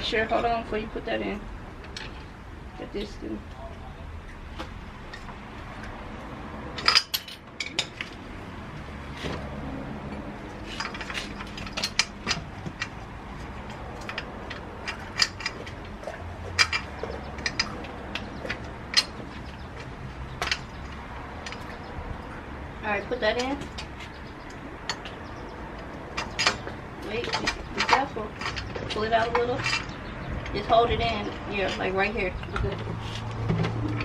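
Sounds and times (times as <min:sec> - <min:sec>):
metallic clicks and clinks: 0:06.7 - 0:08.2, 0:10.0 - 0:22.4, 0:23.3 - 0:32.9
metallic knocks: 0:09.2 - 0:22.4, 0:23.0 - 0:34.0.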